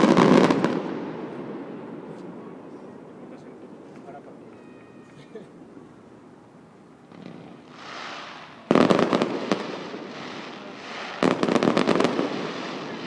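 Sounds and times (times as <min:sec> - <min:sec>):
firework burst: 0:00.0 - 0:02.6, 0:07.1 - 0:13.0
fireworks crackling: 0:00.0 - 0:05.9, 0:06.9 - 0:13.0
firework hiss: 0:07.1 - 0:13.0.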